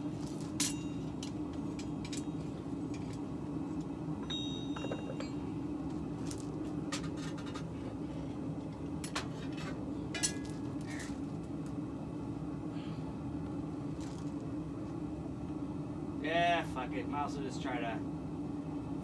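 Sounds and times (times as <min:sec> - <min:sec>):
steady hum: 0:00.0 - 0:19.0
metal pieces clinking: 0:10.2 - 0:11.2.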